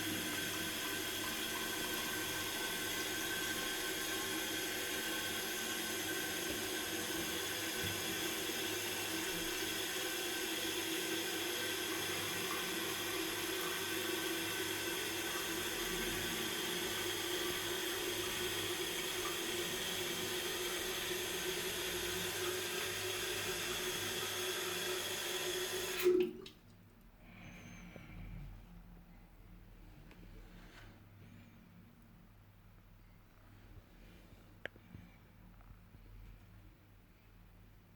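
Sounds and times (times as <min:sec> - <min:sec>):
toilet tank refilling: 0:00.0 - 0:26.6.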